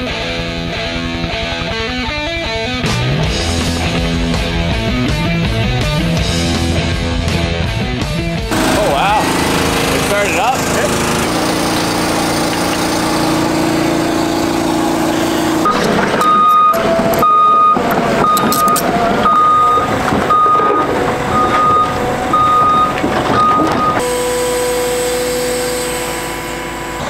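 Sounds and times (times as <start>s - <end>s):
heavy machine engine droning: 8.4s - 27.0s
reversing alarm beeping: 8.5s - 27.0s.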